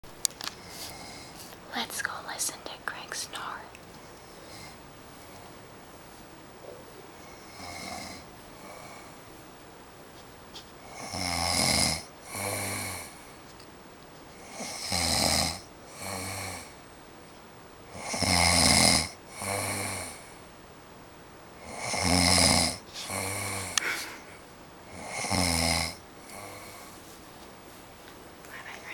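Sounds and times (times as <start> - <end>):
man snoring loudly: 7.2 - 9.1, 10.8 - 13.2, 14.4 - 16.8, 17.9 - 20.3, 21.6 - 23.8, 24.9 - 26.8.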